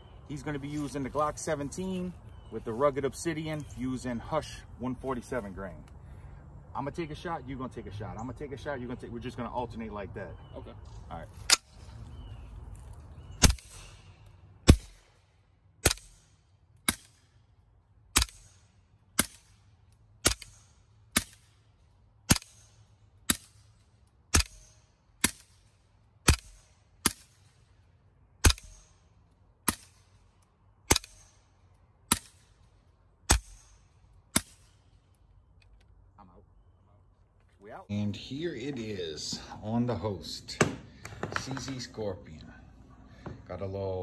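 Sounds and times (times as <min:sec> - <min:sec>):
suppressed gunshots: 0:18.1 - 0:19.6, 0:20.2 - 0:21.6, 0:22.3 - 0:23.7, 0:24.3 - 0:25.6, 0:30.9 - 0:31.4, 0:33.3 - 0:34.8.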